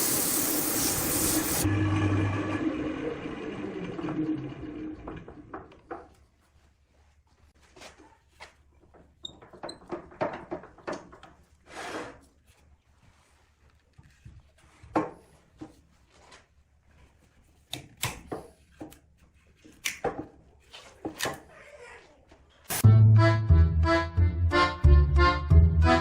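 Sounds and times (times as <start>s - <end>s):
wooden pieces knocking and scraping: 8.8s - 11.5s.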